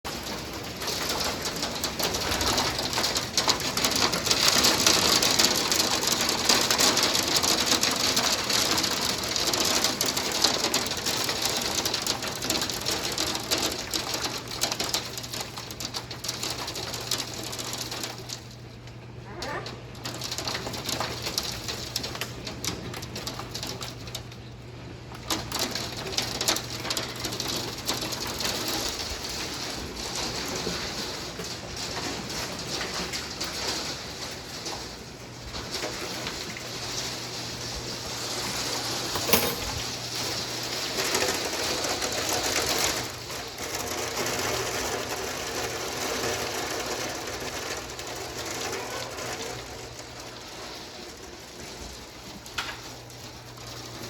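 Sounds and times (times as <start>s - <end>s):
hailstones clattering: 0.1s - 54.0s.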